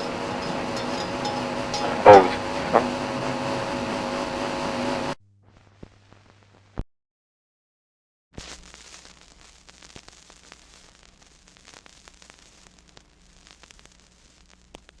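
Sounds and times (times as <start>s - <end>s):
low hum: 0.0s - 6.2s
static hiss with crackles: 0.0s - 6.8s, 8.4s - 15.0s.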